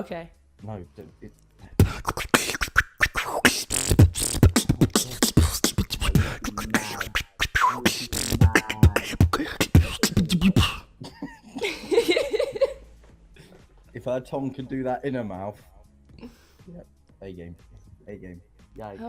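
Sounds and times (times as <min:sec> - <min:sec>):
person beatboxing: 0:01.7 - 0:11.0
soft wavering vocal sound: 0:01.8 - 0:10.9.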